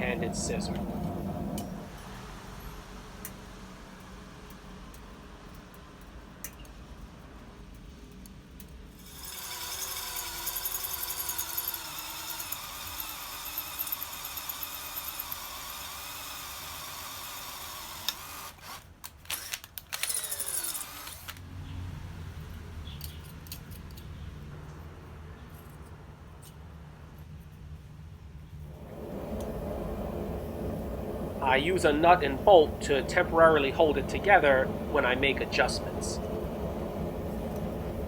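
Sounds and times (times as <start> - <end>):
power tool motor on metal: 9.0 - 21.4.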